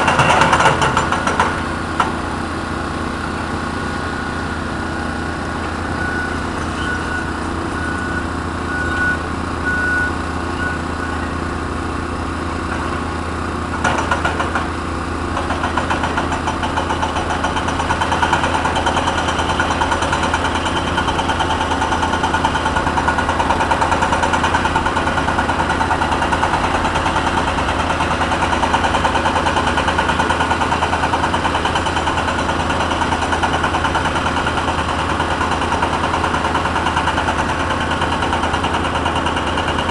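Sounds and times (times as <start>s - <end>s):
hydraulic breaker hammering: 0.0s - 2.3s, 13.7s - 39.9s
excavator diesel engine running: 0.0s - 39.9s.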